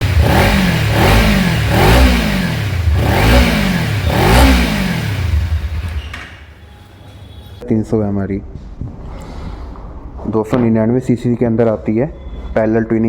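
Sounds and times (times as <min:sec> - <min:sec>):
motorcycle engine revving: 0:00.0 - 0:07.6.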